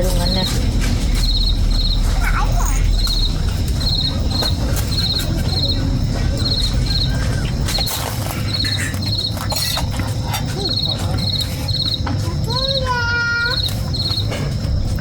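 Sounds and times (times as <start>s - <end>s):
steady low rumble: 0.0s - 12.8s
insects chirping: 0.0s - 15.0s.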